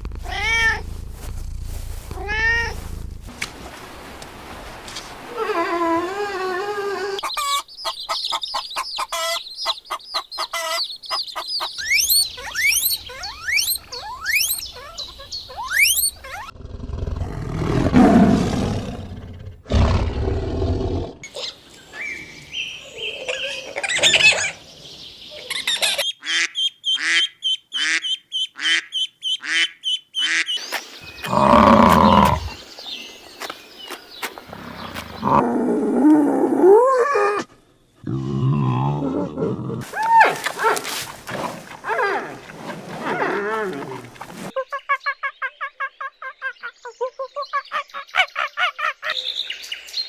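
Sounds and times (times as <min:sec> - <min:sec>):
quick animal chirps: 0:11.7 - 0:16.5
low rumbling animal call: 0:31.2 - 0:32.6.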